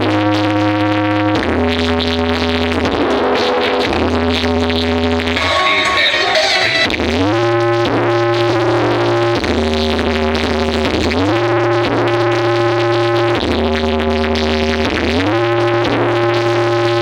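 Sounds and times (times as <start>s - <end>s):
sustained deep bass: 6.8s - 17.0s.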